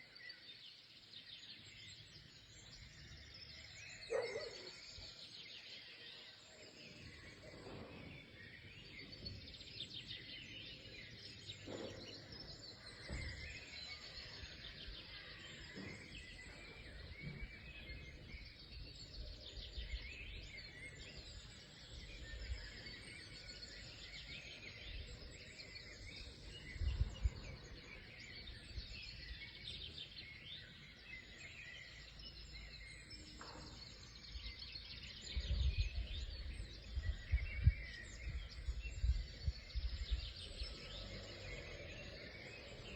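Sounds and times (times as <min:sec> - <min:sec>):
songbirds chirping and singing: 0:00.0 - 0:42.9.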